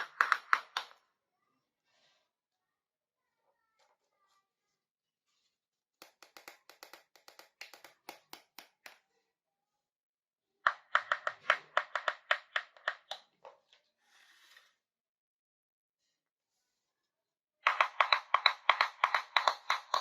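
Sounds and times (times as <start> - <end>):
toy kitchen pieces tapping: 0.0 - 1.0, 6.0 - 9.0, 10.7 - 13.4, 17.7 - 20.0.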